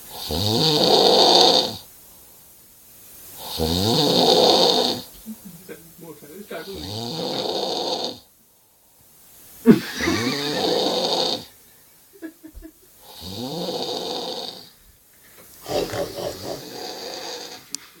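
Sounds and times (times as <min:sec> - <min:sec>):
person snoring loudly: 0:00.1 - 0:01.8, 0:03.4 - 0:05.1, 0:06.7 - 0:08.3, 0:09.8 - 0:11.6, 0:13.0 - 0:14.8, 0:15.6 - 0:17.8.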